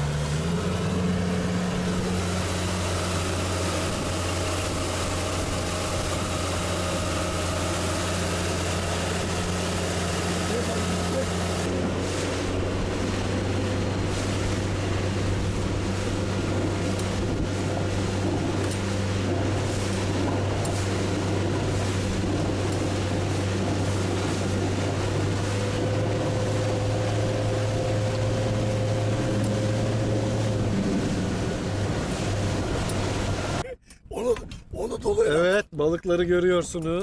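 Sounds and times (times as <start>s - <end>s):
boat engine humming: 0.0s - 37.0s
water noise: 0.0s - 37.0s
wind noise: 0.9s - 33.6s.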